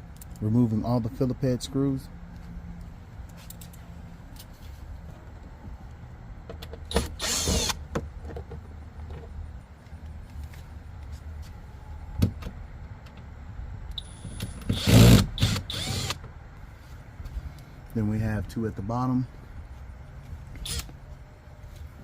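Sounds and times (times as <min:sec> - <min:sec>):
cordless drill spinning screws: 0:06.9 - 0:07.8, 0:14.5 - 0:16.2, 0:20.6 - 0:20.9.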